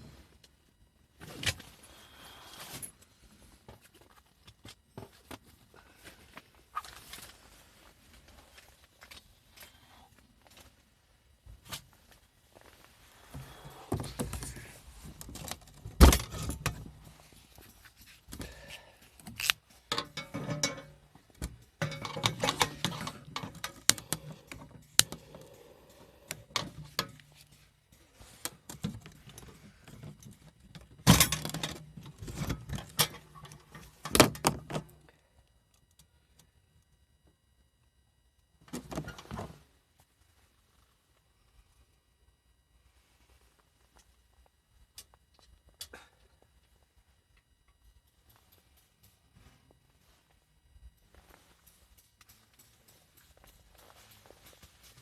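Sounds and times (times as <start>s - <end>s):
objects clinking and knocking: 19.9s - 25.2s.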